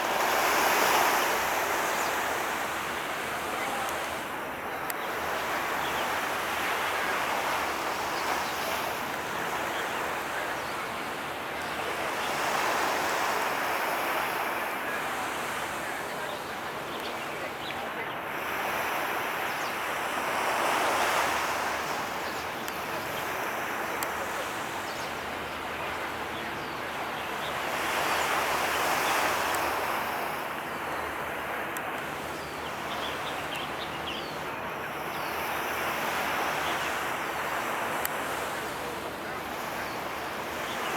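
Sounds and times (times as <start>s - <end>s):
waves washing in: 0.0s - 17.6s.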